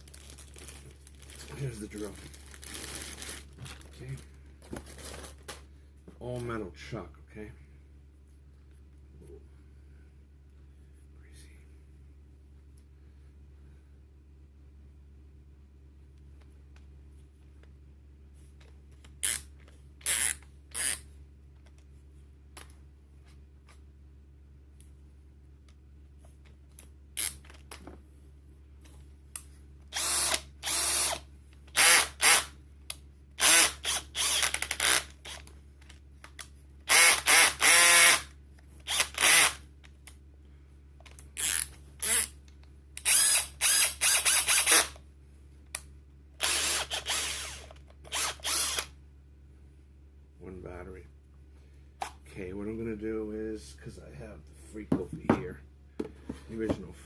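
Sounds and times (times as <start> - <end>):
cordless drill motor spinning: 19.2 - 19.4, 20.0 - 21.0, 29.9 - 32.5, 33.4 - 35.5, 36.9 - 39.6, 41.4 - 42.4, 43.0 - 45.0, 46.4 - 49.0.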